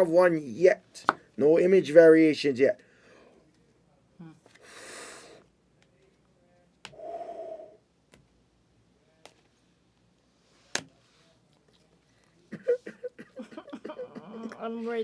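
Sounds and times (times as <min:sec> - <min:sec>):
breathy exhale: 0:06.9 - 0:07.8.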